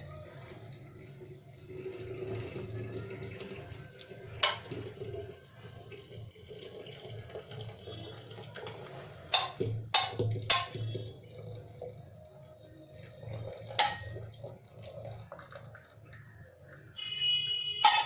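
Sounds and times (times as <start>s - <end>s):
liquid trickling: 0.0s - 18.0s
utensil clinking: 4.4s - 4.9s, 9.3s - 11.0s, 13.6s - 14.5s, 17.8s - 18.0s.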